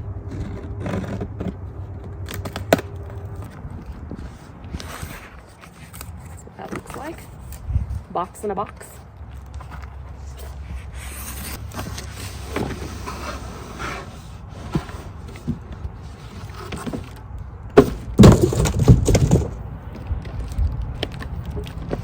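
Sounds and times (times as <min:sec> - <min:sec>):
cardboard scraping and knocking: 0:09.7 - 0:17.2, 0:17.8 - 0:19.6
loud knocks and clatter: 0:17.8 - 0:19.6.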